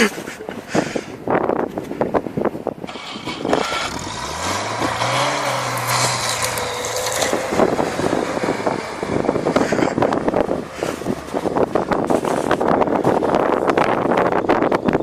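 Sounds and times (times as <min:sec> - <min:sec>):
steady rushing noise: 0:00.3 - 0:15.0
vehicle engine speeding up: 0:02.9 - 0:14.3.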